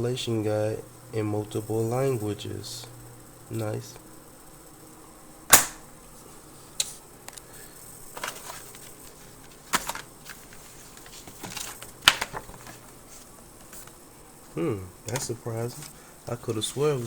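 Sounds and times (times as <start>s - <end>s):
paper packaging rustling: 8.2s - 14.0s.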